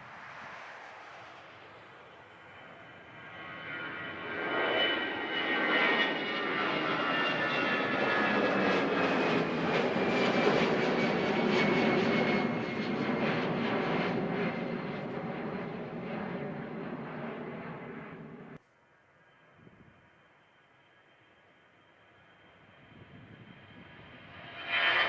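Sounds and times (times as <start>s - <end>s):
high engine whine: 0.0s - 18.6s
jet engines at takeoff: 0.0s - 18.6s, 21.2s - 25.0s.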